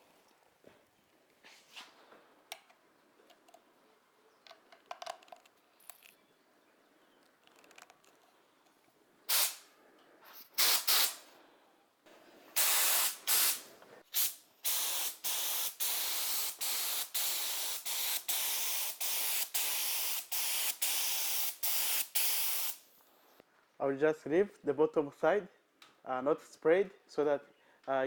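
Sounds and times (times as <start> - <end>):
paint sprayer hissing in spurts: 9.3 - 9.7, 10.3 - 11.3, 12.5 - 22.8.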